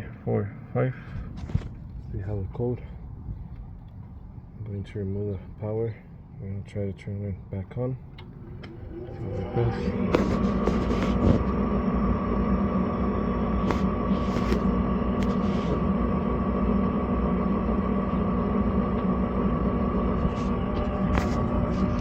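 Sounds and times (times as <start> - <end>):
mechanical drone with whine: 8.0 - 22.0.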